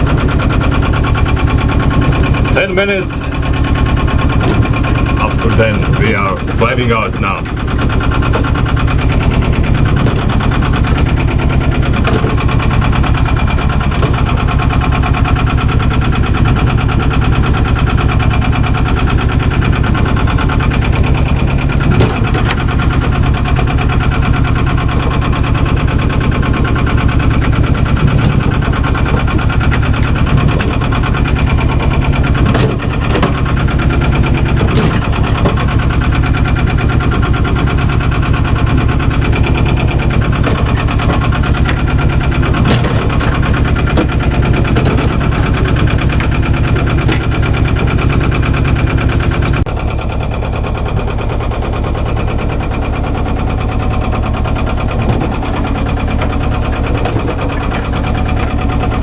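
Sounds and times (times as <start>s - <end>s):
boat engine puttering: 0.0s - 59.0s.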